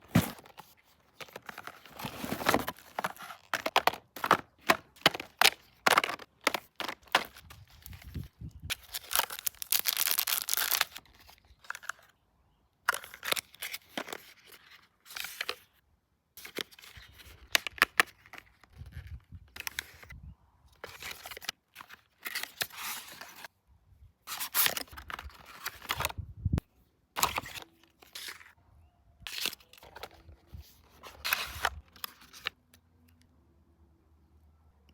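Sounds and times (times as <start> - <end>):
wrapping crinkling and tearing: 8.7 - 11.1.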